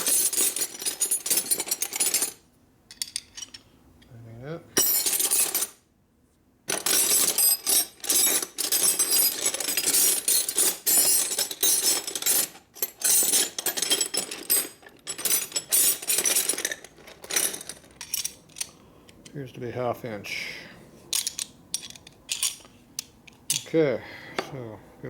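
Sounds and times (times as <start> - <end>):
metal wrenches clattering: 0.0 - 3.6, 4.8 - 5.8, 6.7 - 18.8, 21.1 - 23.7.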